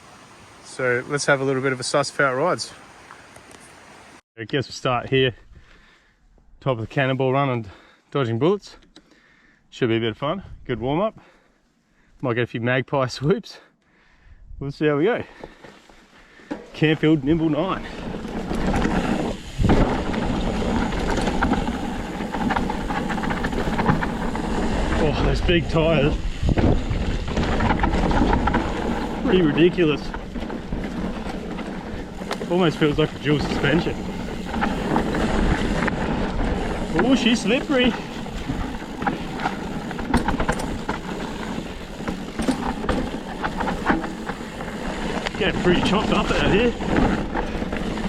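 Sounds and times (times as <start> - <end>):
bike tyres crunching on dirt: 15.0 - 48.0
bike rattling and clicking: 15.3 - 48.0.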